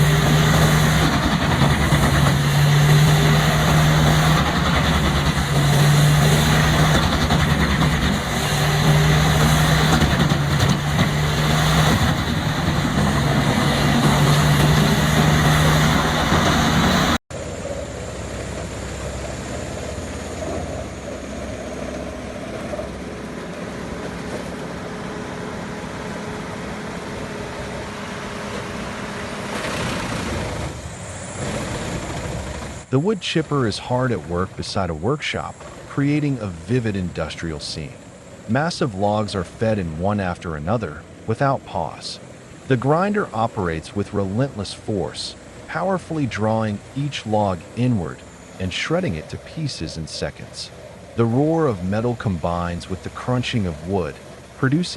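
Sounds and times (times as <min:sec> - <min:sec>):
wood being shredded: 0:00.0 - 0:17.2
wood chipper engine hum: 0:00.0 - 0:32.9, 0:50.6 - 0:54.9.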